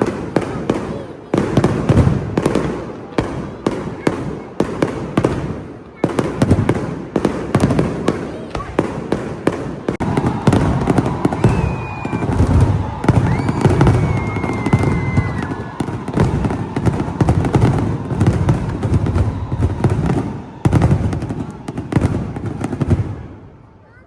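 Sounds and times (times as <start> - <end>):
fireworks crackling and banging: 0.0 - 24.0
firework whistle: 9.9 - 23.2.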